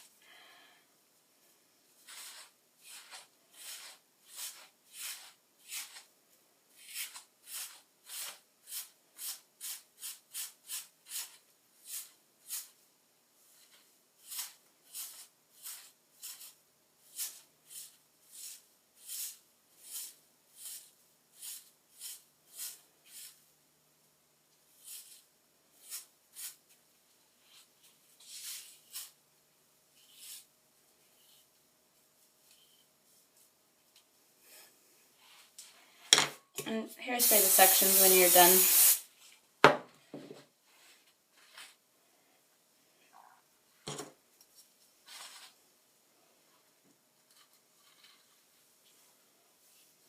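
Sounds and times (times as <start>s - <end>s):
comb backcombing hair: 2.0s - 6.1s, 13.5s - 23.4s, 27.4s - 29.2s, 37.1s - 39.0s.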